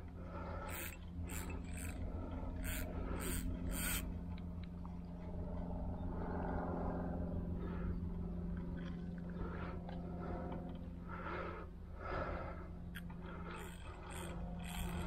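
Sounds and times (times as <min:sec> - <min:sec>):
steady low hum: 0:00.0 - 0:15.0
person breathing: 0:09.3 - 0:15.0.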